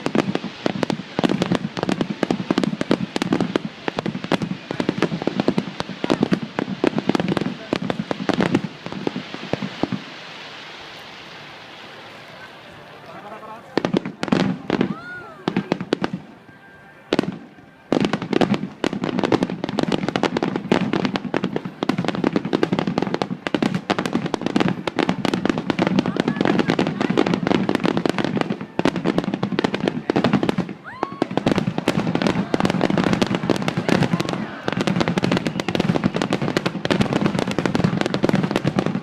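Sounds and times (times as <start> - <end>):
firework shell bursts and crackling: 17.1 - 39.0
whistling firework shell: 33.0 - 36.8.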